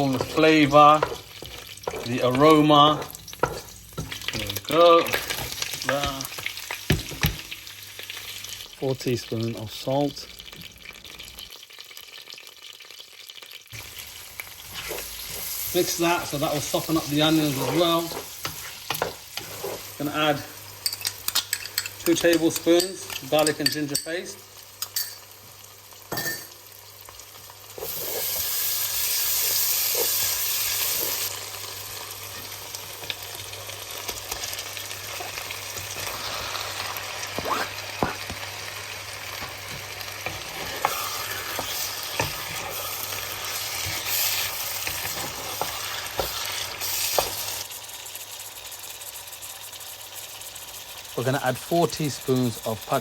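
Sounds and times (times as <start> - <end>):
food sizzling in hot oil: 0.0 - 53.0.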